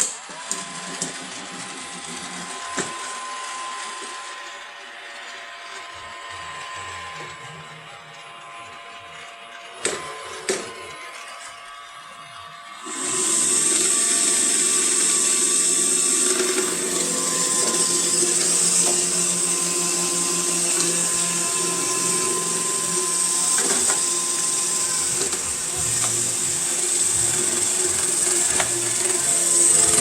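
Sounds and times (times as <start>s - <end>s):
mechanical hum: 0.0s - 30.0s
robot vacuum motor whine: 0.0s - 30.0s.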